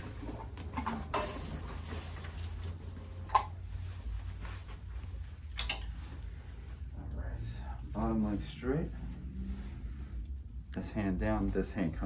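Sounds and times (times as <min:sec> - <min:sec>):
rustling movement on a table: 0:00.0 - 0:06.9
steady low hum: 0:00.0 - 0:12.0.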